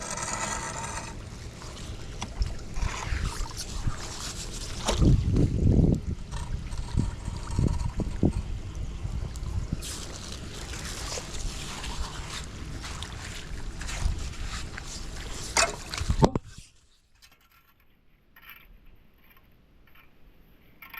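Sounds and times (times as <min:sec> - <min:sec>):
water sloshing at a drain: 0:00.0 - 0:16.4
wind on microphone: 0:02.3 - 0:16.7.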